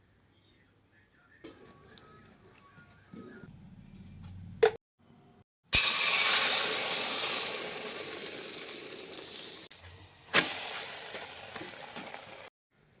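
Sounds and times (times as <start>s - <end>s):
egg sizzling in a hot pan: 5.7s - 12.5s.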